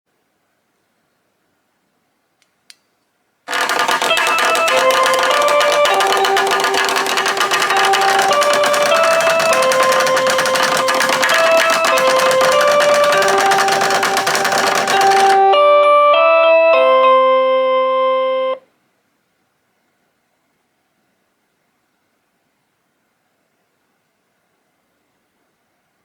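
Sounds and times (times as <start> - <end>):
faint click: 2.4 - 3.0.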